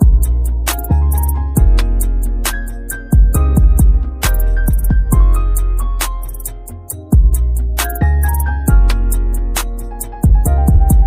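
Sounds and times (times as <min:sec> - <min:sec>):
deep bass hits: 0:00.0 - 0:02.5, 0:03.1 - 0:06.3, 0:10.2 - 0:11.0
ticking hi-hats: 0:00.0 - 0:11.0.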